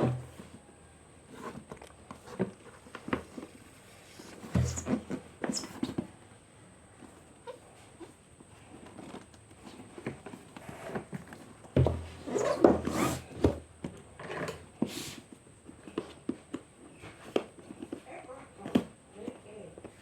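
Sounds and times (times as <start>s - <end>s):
dull thump: 11.8s - 12.2s.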